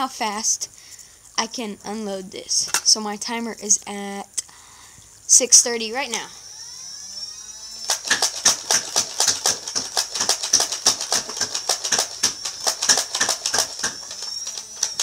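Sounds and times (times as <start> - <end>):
flywheel motors whining: 6.1 - 15.0
toy blaster firing clicks: 6.1 - 15.0.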